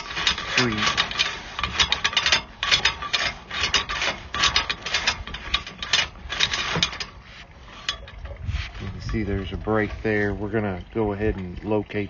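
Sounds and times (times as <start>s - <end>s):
cable reel clicking and rattling: 0.0s - 9.4s.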